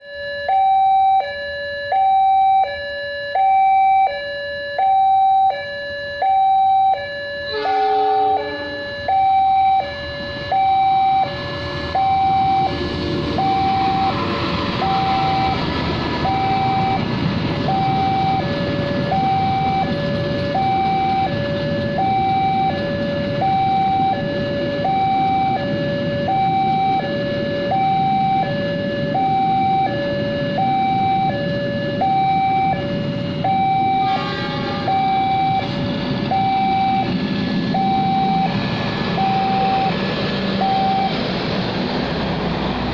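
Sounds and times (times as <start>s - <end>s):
two-tone warning siren: 0.0s - 42.9s
brief horn: 7.5s - 9.0s, 33.9s - 35.2s
broad rumble: 10.0s - 42.9s.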